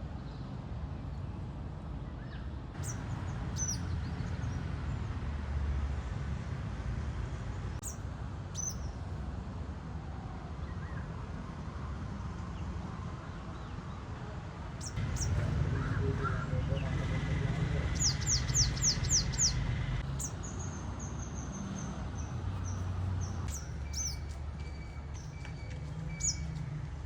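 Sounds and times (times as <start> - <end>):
small bird chirping: 2.8 - 4.6, 7.8 - 9.0, 17.9 - 25.4, 26.2 - 26.5
low outdoor rumble: 13.2 - 27.0.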